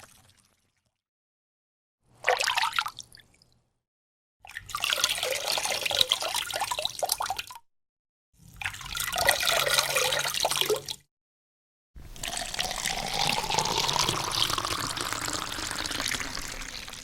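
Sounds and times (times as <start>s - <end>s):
water running into a container: 12.0s - 17.0s
water bubbling splash: 12.5s - 17.0s.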